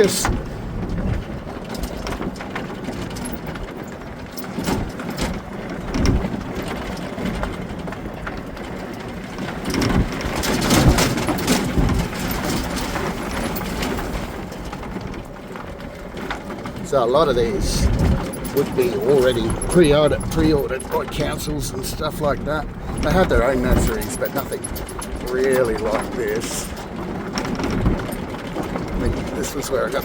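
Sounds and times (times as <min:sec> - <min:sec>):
golf cart motor running: 0:00.0 - 0:30.0.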